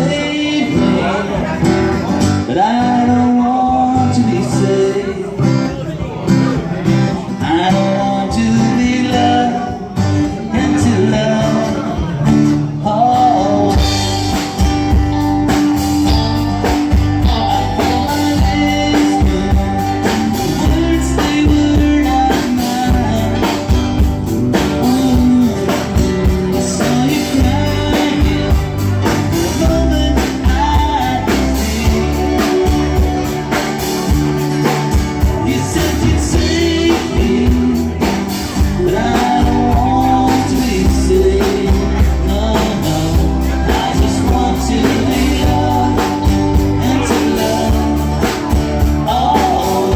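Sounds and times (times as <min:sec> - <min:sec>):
live rock band playing: 0:00.0 - 0:49.9.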